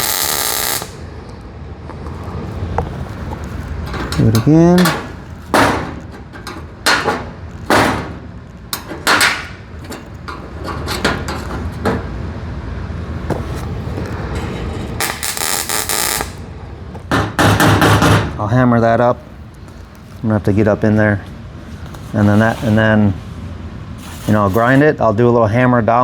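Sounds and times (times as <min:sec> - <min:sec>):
welder crackling: 0:00.0 - 0:01.1, 0:02.1 - 0:12.1, 0:13.3 - 0:16.5.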